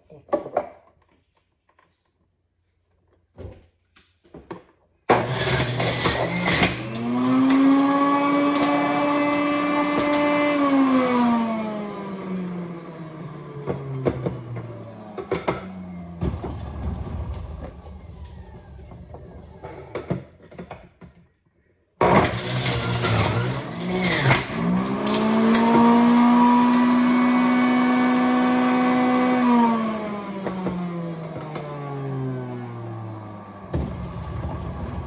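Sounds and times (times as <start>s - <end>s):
blender motor whining: 5.1s - 20.2s, 22.0s - 35.0s.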